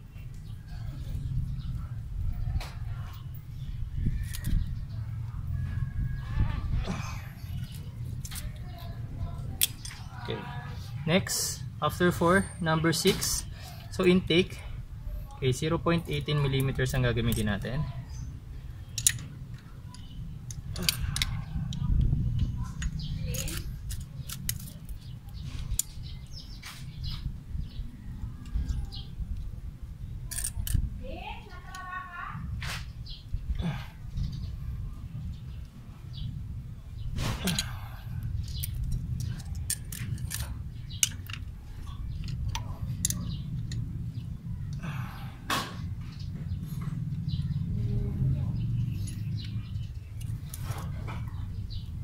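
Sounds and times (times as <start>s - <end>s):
hand tools clicking and scraping: 18.9s - 21.8s, 22.7s - 26.9s, 37.2s - 43.9s
low rumble: 32.4s - 52.0s.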